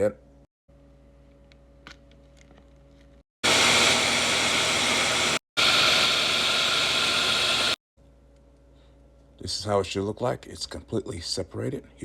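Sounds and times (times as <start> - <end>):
blender whirring on high: 3.4 - 7.8.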